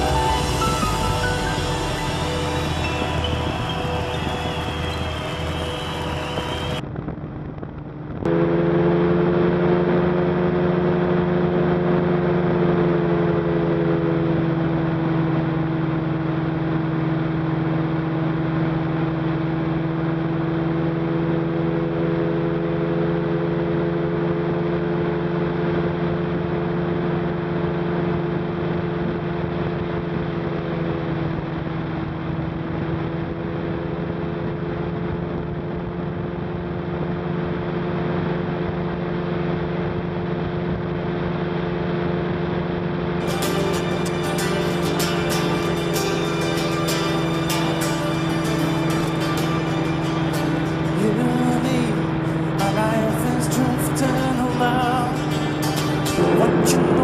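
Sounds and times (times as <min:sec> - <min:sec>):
air rush: 0:00.0 - 0:06.8
droning aircraft engine: 0:00.0 - 0:57.0.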